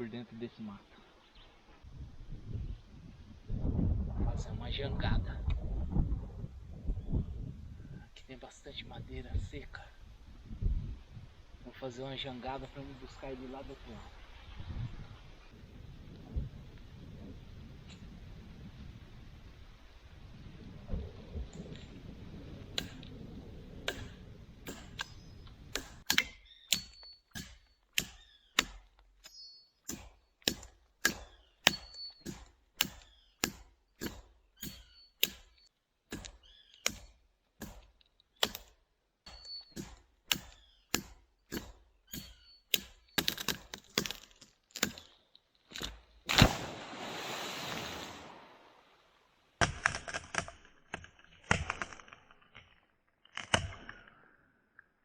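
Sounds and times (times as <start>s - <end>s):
axe chopping dry wood: 22.8s - 23.0s, 23.8s - 29.2s, 29.9s - 45.1s, 53.4s - 53.9s.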